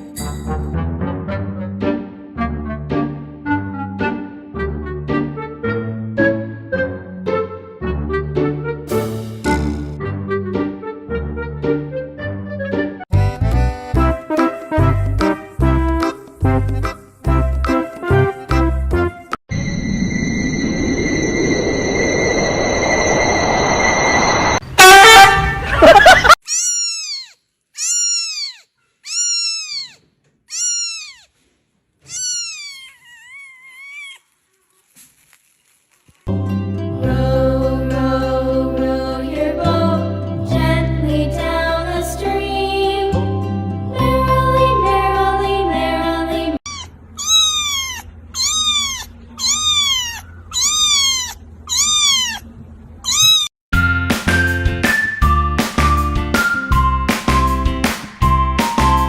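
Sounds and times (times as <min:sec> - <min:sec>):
cat meowing: 0:26.4 - 0:31.3, 0:32.0 - 0:34.3, 0:46.7 - 0:53.5
music with plucked notes: 0:36.3 - 0:46.6.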